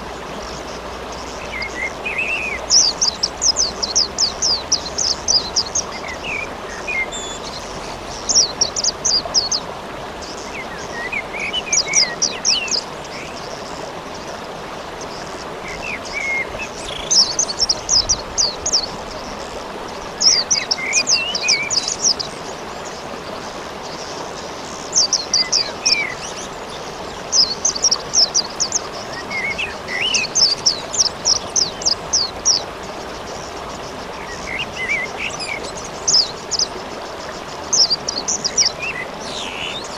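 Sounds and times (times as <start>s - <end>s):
steady rain hiss: 0.0s - 39.9s
songbird chirping: 15.0s - 39.9s.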